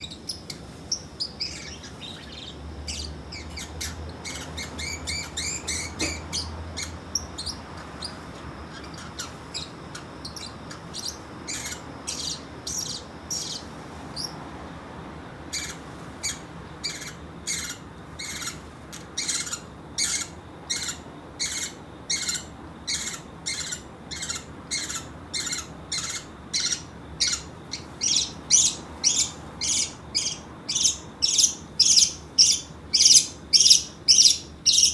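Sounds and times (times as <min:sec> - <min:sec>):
parrot chirping and calling: 0:00.0 - 0:14.4, 0:15.5 - 0:34.9.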